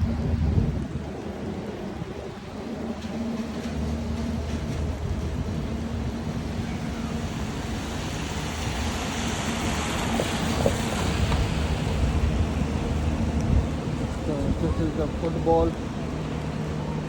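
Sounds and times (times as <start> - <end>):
wind buffeting microphone: 0.0 - 17.0
car tyres hissing on wet road: 7.0 - 13.1.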